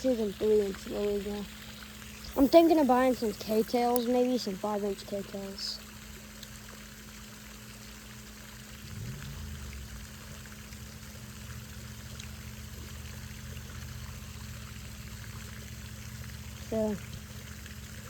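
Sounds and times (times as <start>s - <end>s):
faint water drips: 0.0s - 18.0s
low steady hum: 0.0s - 18.0s
water running and trickling: 0.0s - 18.0s
low rumble: 8.7s - 12.5s.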